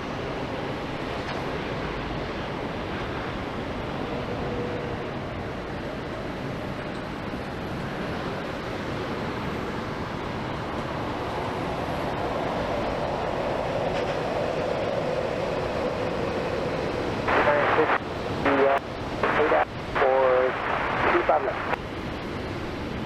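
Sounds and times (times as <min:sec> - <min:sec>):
jet airliner engine rushing: 0:00.1 - 0:23.0
droning aircraft tone: 0:12.8 - 0:22.7.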